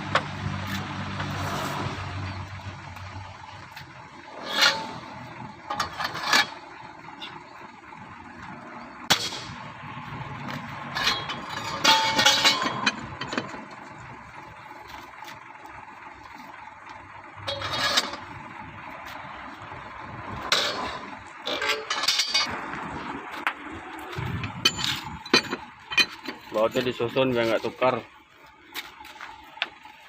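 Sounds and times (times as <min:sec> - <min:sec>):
metal tools clanking and scraping: 0:03.7 - 0:07.4, 0:08.4 - 0:09.6, 0:10.2 - 0:15.4, 0:17.4 - 0:19.6, 0:20.3 - 0:22.7, 0:23.4 - 0:30.0.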